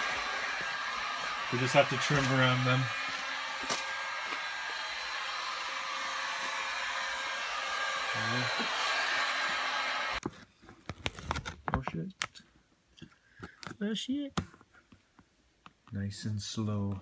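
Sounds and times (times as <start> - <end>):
heat gun blowing: 0.0 - 10.2.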